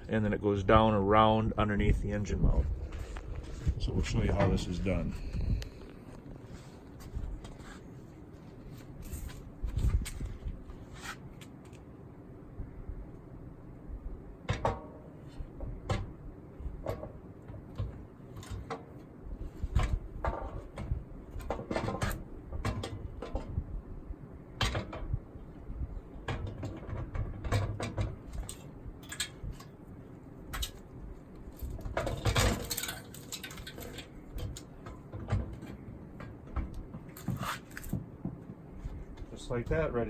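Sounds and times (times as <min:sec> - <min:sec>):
metal clunks and knocks: 0:26.2 - 0:29.3, 0:31.8 - 0:38.6.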